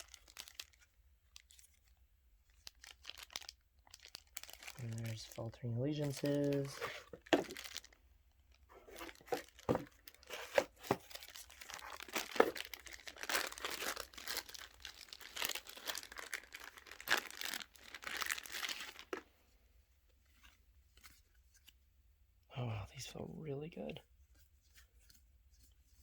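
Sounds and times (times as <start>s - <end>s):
packaging crinkling and tearing: 0.0s - 19.2s.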